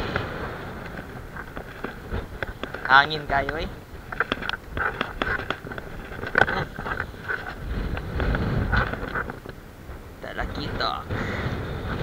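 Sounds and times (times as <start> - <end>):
wind buffeting microphone: 0.0 - 12.0
handling clicks and knocks: 0.8 - 9.6.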